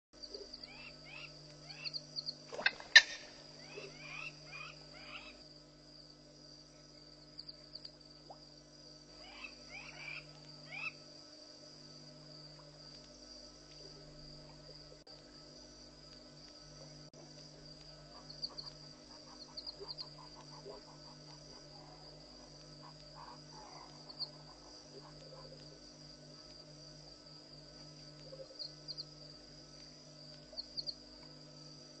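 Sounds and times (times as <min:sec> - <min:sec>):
crickets trilling: 0:00.2 - 0:32.0.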